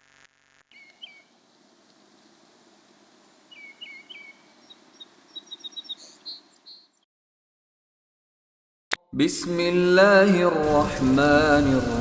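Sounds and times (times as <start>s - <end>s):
background hiss: 0.0s - 6.8s
birds chirping: 0.7s - 7.1s.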